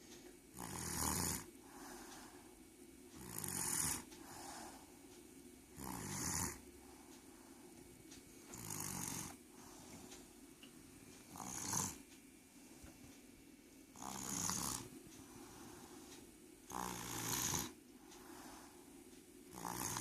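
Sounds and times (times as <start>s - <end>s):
person snoring: 0.6s - 2.4s, 3.2s - 4.9s, 5.8s - 6.9s, 8.5s - 10.0s, 11.3s - 12.0s, 13.9s - 18.9s, 19.5s - 20.0s.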